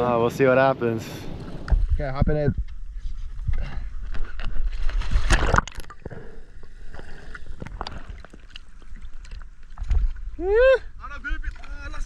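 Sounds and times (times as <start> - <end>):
water gurgling and sloshing: 1.2 - 12.0
water splashing: 4.2 - 12.0.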